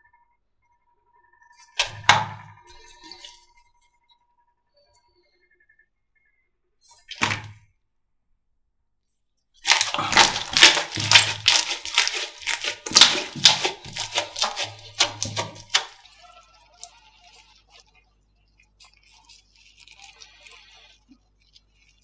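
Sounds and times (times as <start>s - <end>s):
dull thumps: 9.7s - 16.0s
slime popping and crackling: 9.7s - 16.1s.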